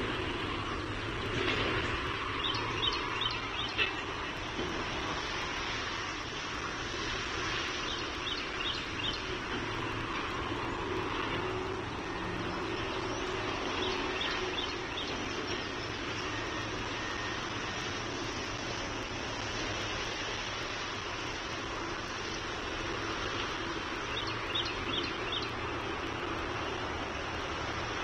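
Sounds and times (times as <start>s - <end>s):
faint engine drone: 0.0s - 28.0s.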